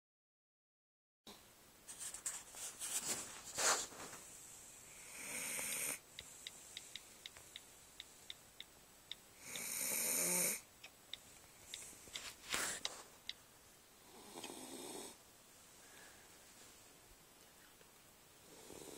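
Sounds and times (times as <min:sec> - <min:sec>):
pet snoring: 0:04.9 - 0:06.0, 0:09.4 - 0:10.6, 0:14.0 - 0:15.2, 0:18.4 - 0:18.9
faint regular ticks: 0:05.4 - 0:13.4, 0:14.4 - 0:14.6.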